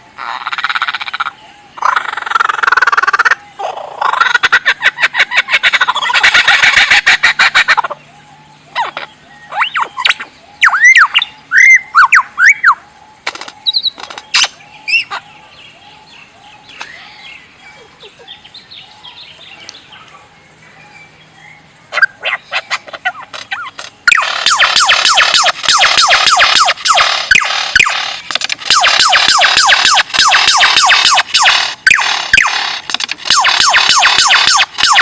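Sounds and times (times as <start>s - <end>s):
bird whistled looping calls: 0.0s - 35.0s
bird dry clicks: 13.2s - 14.6s, 27.3s - 35.0s.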